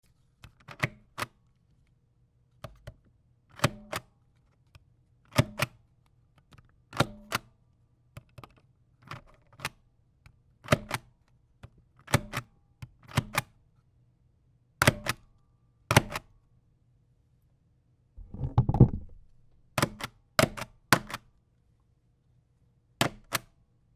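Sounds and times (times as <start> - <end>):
ink stamp knocking on paper: 18.2 - 19.2.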